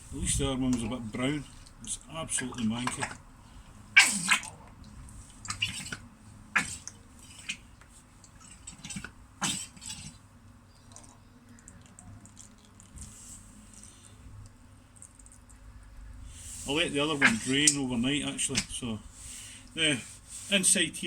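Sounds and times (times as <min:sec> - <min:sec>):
faint drips: 0:00.6 - 0:06.0, 0:10.8 - 0:15.7
oil splashing and glugging: 0:00.6 - 0:13.2, 0:16.4 - 0:20.1.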